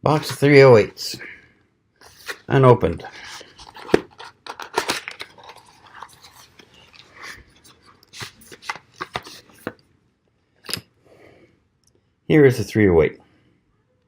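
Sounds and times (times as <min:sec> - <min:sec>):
cardboard box being torn open: 0:03.3 - 0:06.4.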